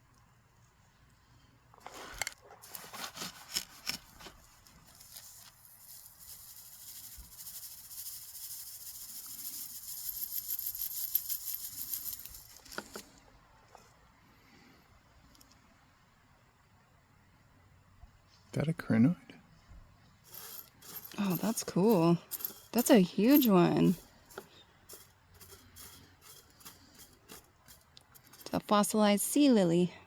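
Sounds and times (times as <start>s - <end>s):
rocks rattling and rustling in box: 1.8s - 13.1s, 20.3s - 28.7s.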